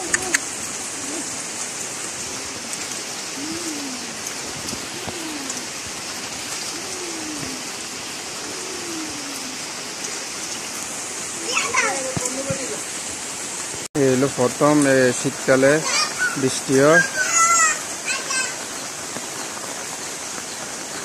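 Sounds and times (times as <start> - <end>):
bird cooing: 0.0 - 1.6, 2.5 - 9.9, 11.4 - 12.8
heavy rain falling: 0.0 - 21.0.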